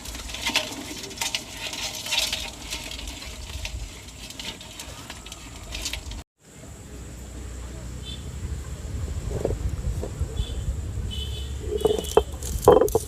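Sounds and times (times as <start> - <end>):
clicking and scratchy rattling: 11.6 - 13.0.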